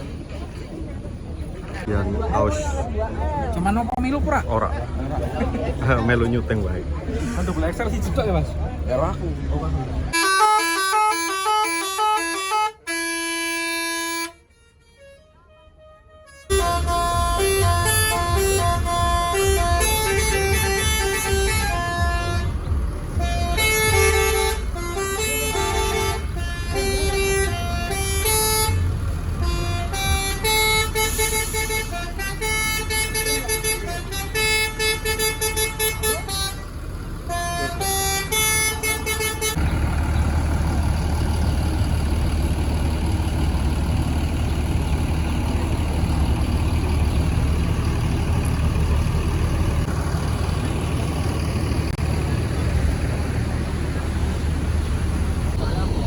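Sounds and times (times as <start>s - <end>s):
bus horn playing melodic notes: 10.1s - 40.0s
steady low rumble: 16.5s - 56.0s.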